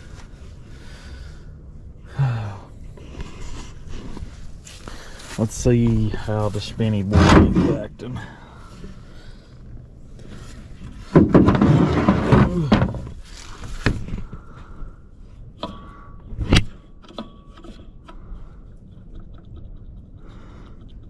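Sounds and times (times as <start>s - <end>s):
knocks and clicks of turbo: 15.6s - 21.0s.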